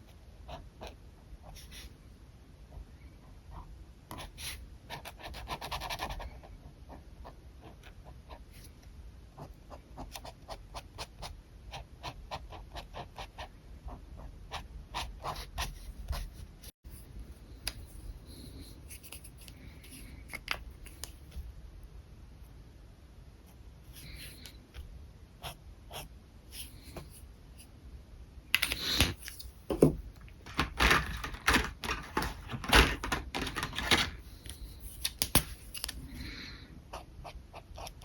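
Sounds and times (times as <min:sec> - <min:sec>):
pen scratching on paper: 0:03.5 - 0:08.7, 0:09.4 - 0:16.4, 0:25.4 - 0:27.2.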